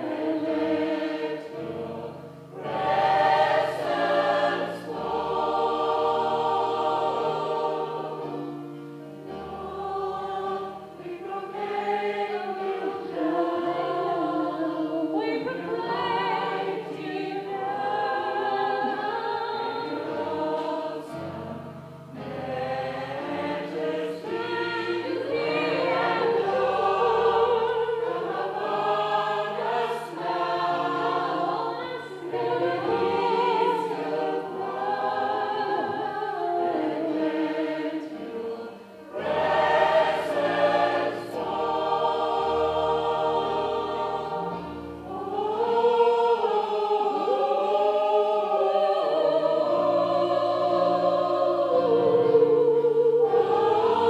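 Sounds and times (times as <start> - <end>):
gospel choir singing in harmony: 0.0 - 54.0.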